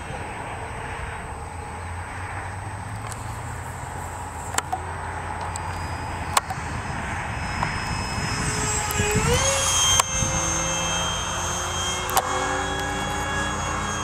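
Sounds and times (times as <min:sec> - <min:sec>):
model airplane motor whining: 0:00.0 - 0:14.0
sharp clicks: 0:04.3 - 0:06.7, 0:07.5 - 0:14.0.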